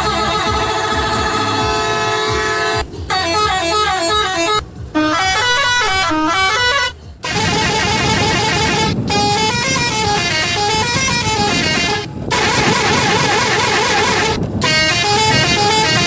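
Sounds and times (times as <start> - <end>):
multi-tone horn playing a tune: 0.0 - 16.0.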